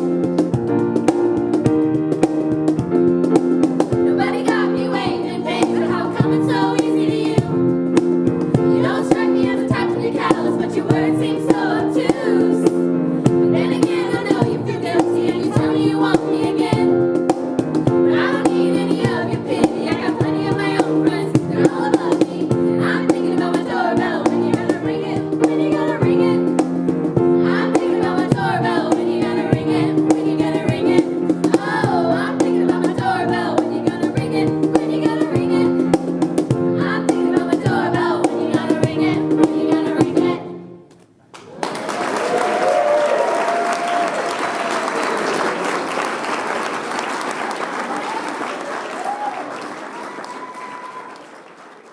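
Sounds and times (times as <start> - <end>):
band playing a song: 0.0 - 40.6.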